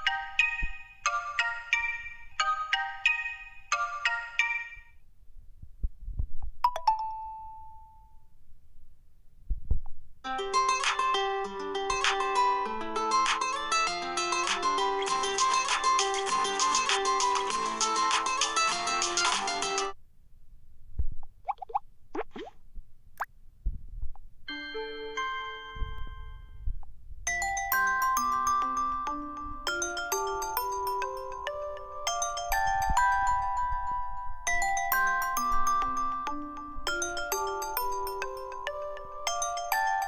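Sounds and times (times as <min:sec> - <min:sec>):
mallet chime ringtone melody: 0:00.0 - 0:05.0, 0:06.7 - 0:08.2, 0:24.5 - 0:26.7, 0:27.3 - 0:40.0.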